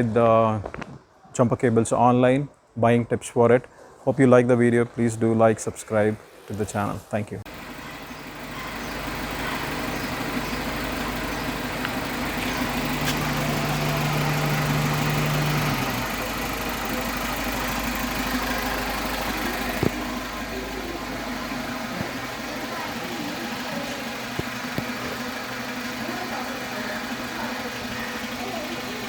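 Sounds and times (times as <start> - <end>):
engine idling: 7.5 - 29.0.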